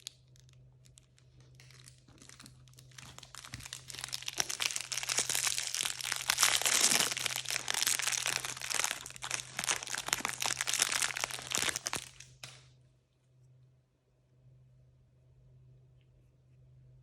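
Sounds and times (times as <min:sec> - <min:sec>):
packaging crinkling: 0:00.0 - 0:12.6.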